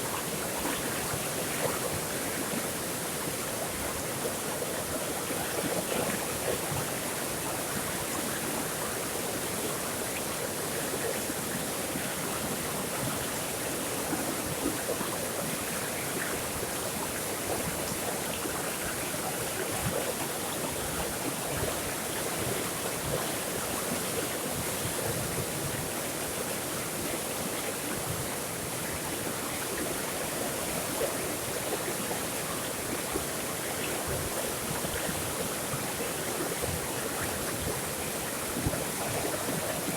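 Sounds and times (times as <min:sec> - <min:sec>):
flowing water rushing: 0:00.0 - 0:39.9.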